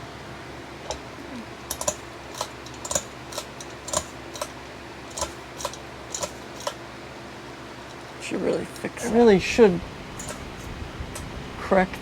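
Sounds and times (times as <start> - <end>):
sharp clicks of switch parts: 0.9 - 6.8.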